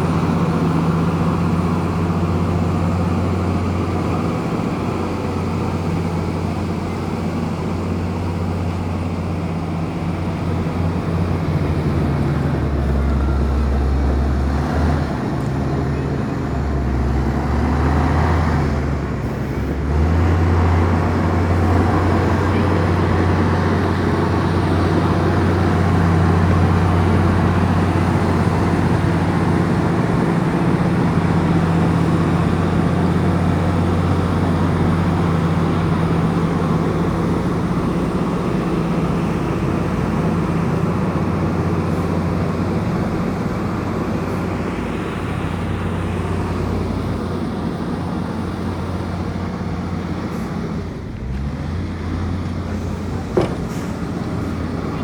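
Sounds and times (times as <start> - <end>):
bulldozer diesel engine humming: 0.0 - 55.0.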